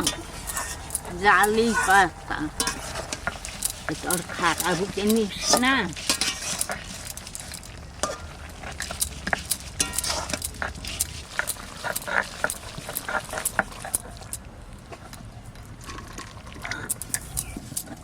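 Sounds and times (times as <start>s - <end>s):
stone grinding on stone: 0.0s - 14.4s.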